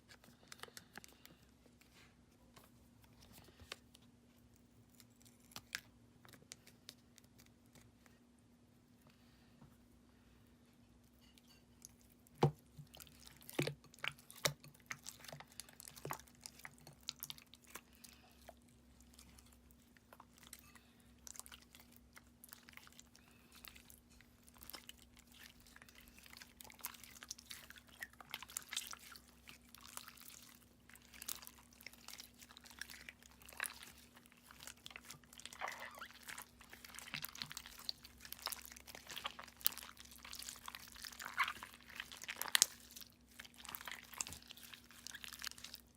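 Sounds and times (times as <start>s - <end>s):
slime being kneaded squishing: 11.8s - 45.9s.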